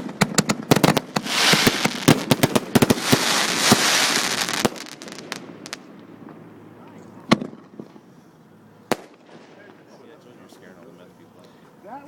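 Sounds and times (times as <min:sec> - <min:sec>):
firework bangs and cracks: 0:00.0 - 0:05.9, 0:08.9 - 0:10.0
firework hissing fizz: 0:00.9 - 0:05.8.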